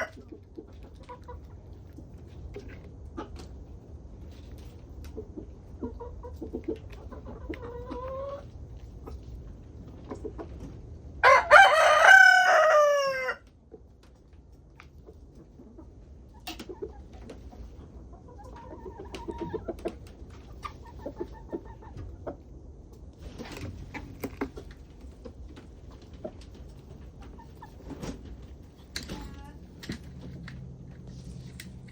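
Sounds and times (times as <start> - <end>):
hens clucking softly: 0.0 - 28.8
rooster crowing: 11.2 - 13.4.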